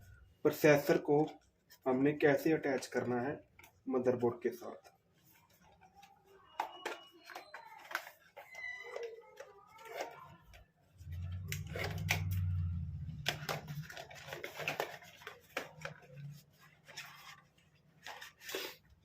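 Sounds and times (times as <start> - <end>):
packaging tearing: 7.0 - 18.8
low rumble of handling: 11.0 - 14.6.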